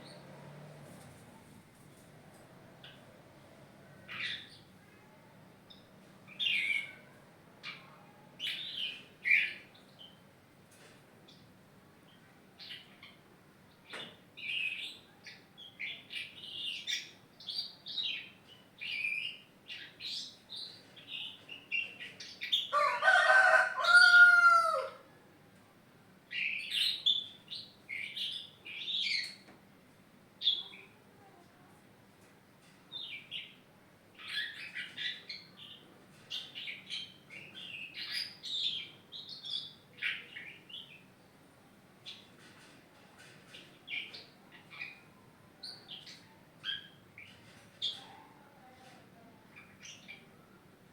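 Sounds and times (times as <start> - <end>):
songbird chirping: 0.0 - 10.3, 30.4 - 31.0, 32.2 - 41.4
rooster crowing: 22.7 - 25.1.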